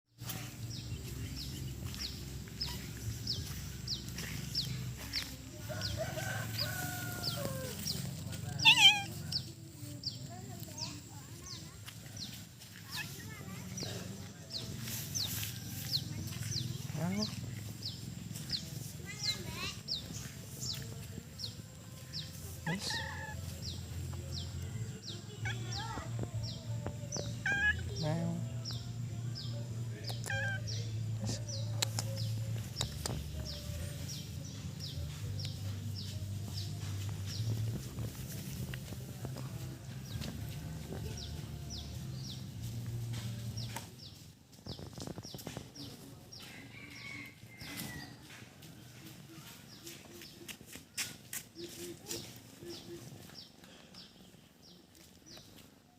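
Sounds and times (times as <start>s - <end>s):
birds chirping: 0.2s - 48.2s, 48.8s - 55.9s
wavering animal calls: 8.6s - 9.3s, 27.2s - 28.0s.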